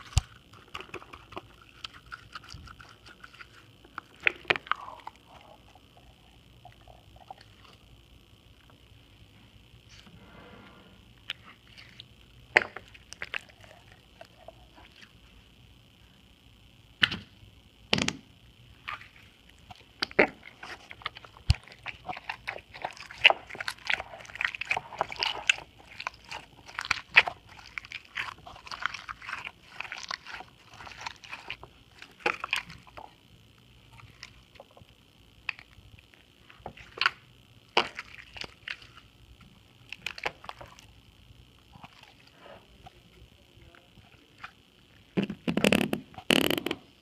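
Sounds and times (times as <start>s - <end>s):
steady high-pitched tone: 0.0s - 16.9s.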